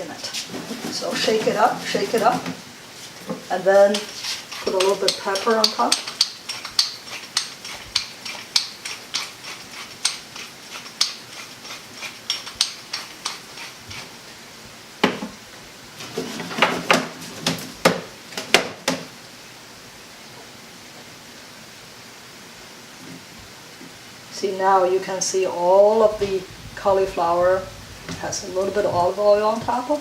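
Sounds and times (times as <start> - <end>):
pepper mill clicking: 3.9 - 14.0.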